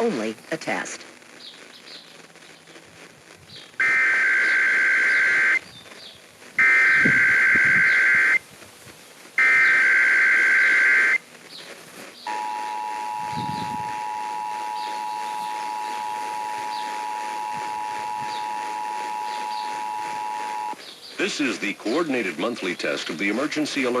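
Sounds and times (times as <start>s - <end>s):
harsh digital data tones: 3.7s - 5.7s, 6.6s - 8.4s, 9.4s - 11.2s, 12.2s - 24.0s
two-tone attention signal: 3.8s - 5.6s, 6.6s - 8.4s, 9.4s - 11.2s, 12.3s - 20.8s.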